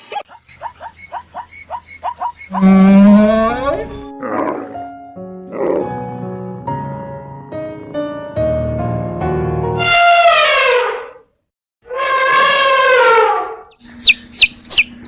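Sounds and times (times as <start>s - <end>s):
cow mooing: 2.5s - 4.8s
piano music: 2.6s - 10.1s
dog yipping: 13.9s - 15.0s.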